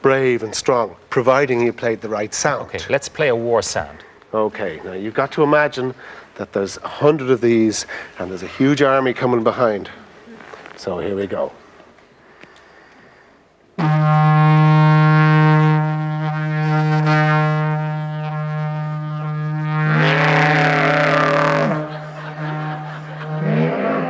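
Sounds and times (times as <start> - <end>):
horn higher sliding note: 13.8 - 24.0
horn low drone: 13.8 - 24.0.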